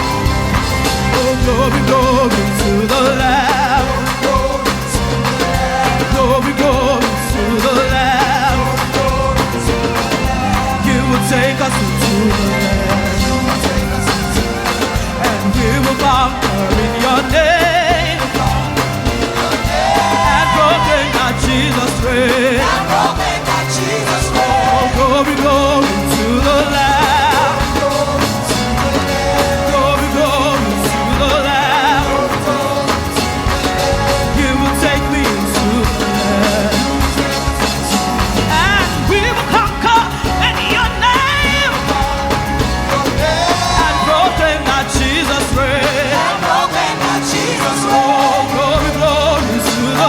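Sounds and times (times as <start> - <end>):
band with bass and drums: 0.0 - 50.0
lead voice singing with vibrato: 0.0 - 50.0.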